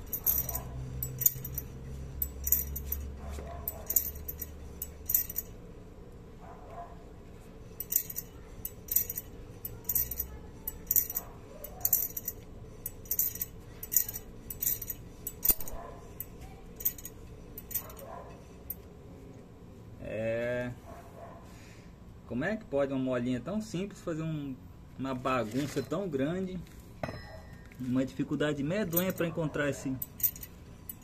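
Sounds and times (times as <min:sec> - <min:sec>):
brake spring chinking and scraping: 0:00.0 - 0:05.6, 0:07.8 - 0:18.8.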